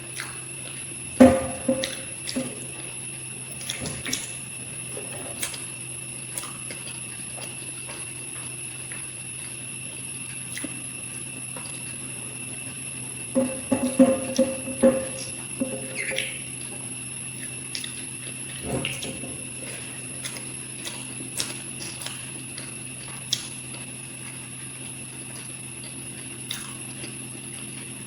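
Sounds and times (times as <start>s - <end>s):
close eating sounds: 0.0s - 28.0s
steady electrical hum: 0.0s - 28.0s
clicks and knocks against dish: 13.4s - 16.2s.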